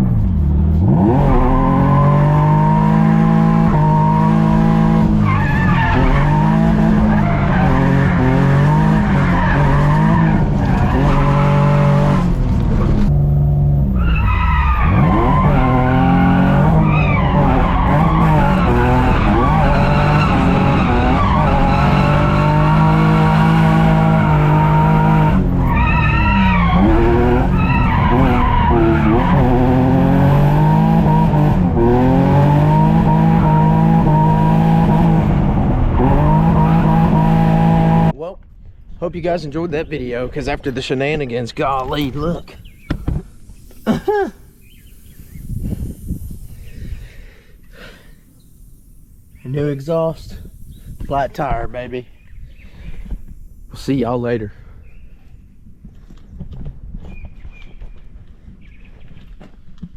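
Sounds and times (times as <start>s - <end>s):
car engine revving: 0.0s - 38.2s
tires squealing: 0.1s - 38.1s.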